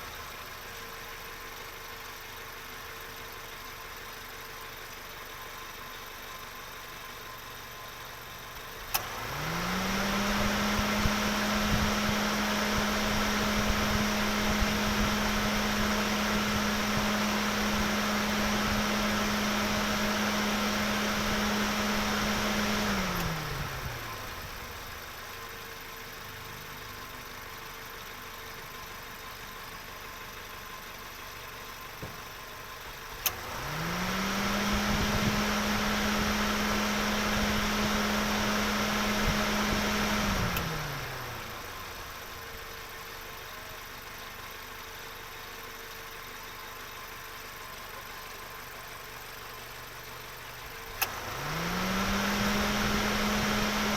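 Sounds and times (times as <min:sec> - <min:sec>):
car engine revving and idling: 0:00.0 - 0:53.9
click: 0:08.9 - 0:09.1, 0:33.2 - 0:33.4, 0:40.5 - 0:40.8, 0:51.0 - 0:51.2.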